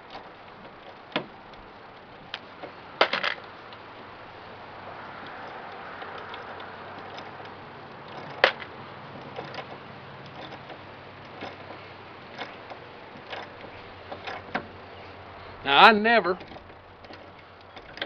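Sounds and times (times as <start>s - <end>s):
soft ratcheting clicks: 0.0s - 18.0s.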